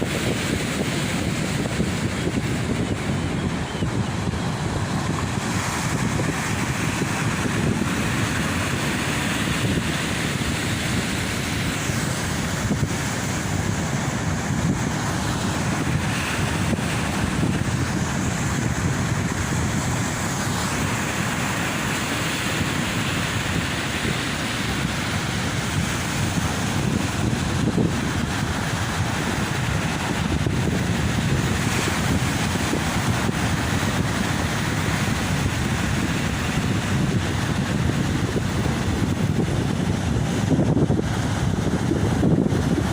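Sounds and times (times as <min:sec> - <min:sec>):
ocean waves on beach: 0:00.0 - 0:42.9
wind buffeting microphone: 0:00.0 - 0:42.9.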